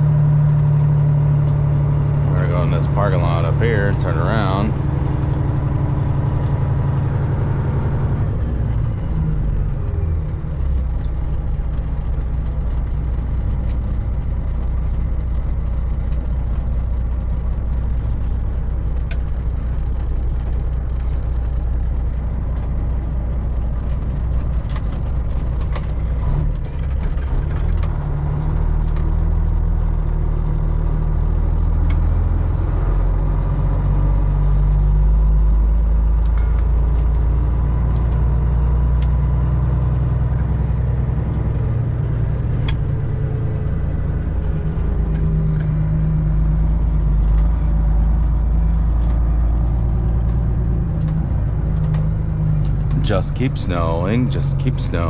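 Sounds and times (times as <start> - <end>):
diesel truck engine under load: 0.0 - 55.0.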